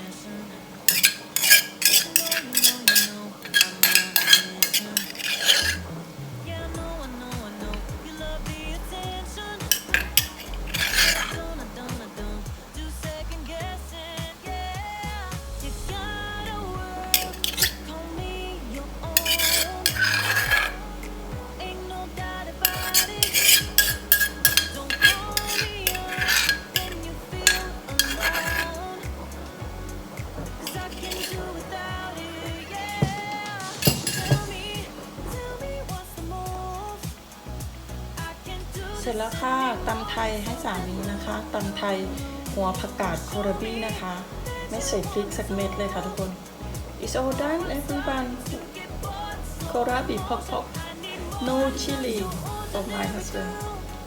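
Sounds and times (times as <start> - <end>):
background music: 0.0 - 54.0
utensils clinking against bowl: 0.9 - 5.9, 9.4 - 11.4, 17.0 - 18.0, 19.1 - 21.0, 22.6 - 29.0, 30.1 - 35.5.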